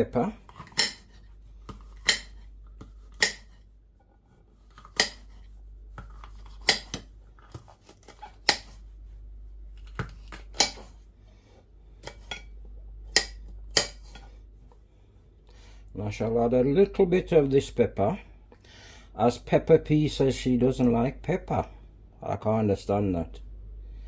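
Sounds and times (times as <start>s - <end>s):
knife chopping on board: 0.5s - 3.6s, 4.7s - 5.4s, 6.0s - 8.8s, 9.8s - 11.0s, 12.0s - 12.4s, 13.1s - 14.2s.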